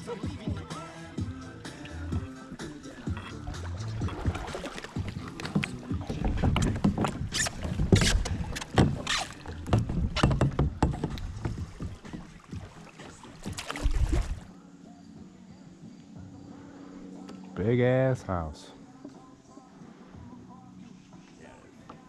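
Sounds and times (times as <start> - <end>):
paddle splashes and knocks: 3.1 - 14.5.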